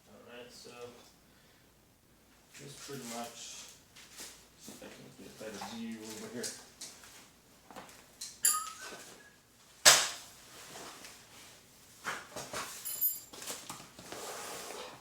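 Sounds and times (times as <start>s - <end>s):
short ringing clinks: 8.4s - 9.0s, 12.8s - 13.3s.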